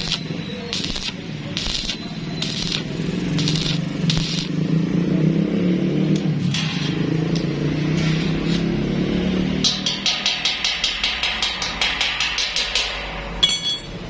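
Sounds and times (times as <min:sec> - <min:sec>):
welding arc crackling: 0:00.0 - 0:05.0
welding machine hum: 0:00.0 - 0:05.2.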